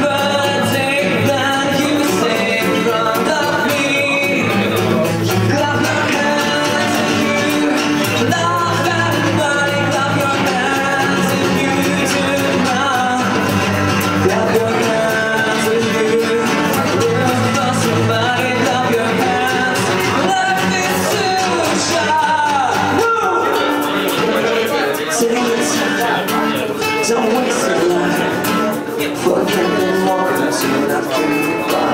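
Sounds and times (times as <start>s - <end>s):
guitar: 0.0s - 31.9s
person singing: 0.0s - 31.9s.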